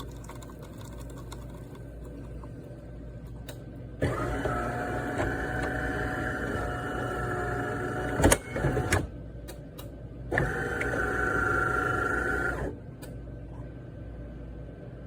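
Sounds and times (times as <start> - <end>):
espresso machine motor whirring: 4.0 - 8.9.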